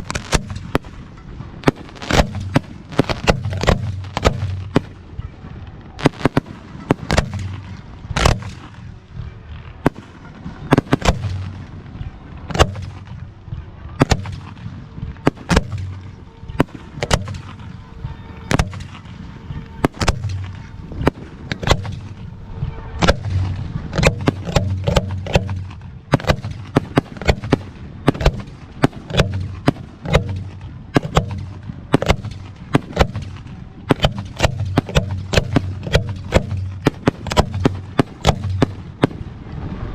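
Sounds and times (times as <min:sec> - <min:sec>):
fireworks bangs and booms: 0:00.0 - 0:39.9.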